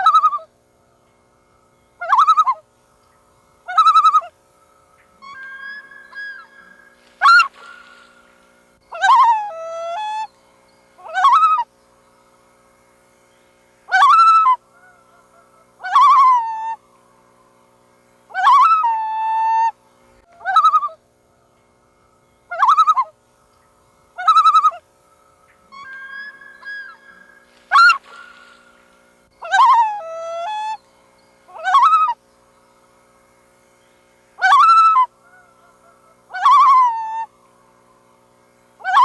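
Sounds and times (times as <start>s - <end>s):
loon calls: 2.0s - 2.7s, 3.6s - 4.4s, 5.2s - 10.3s, 11.0s - 11.7s, 13.9s - 16.8s, 18.3s - 21.0s, 22.5s - 23.2s, 24.2s - 24.9s, 25.6s - 30.8s, 31.5s - 32.2s, 34.4s - 37.3s, 38.8s - 39.0s.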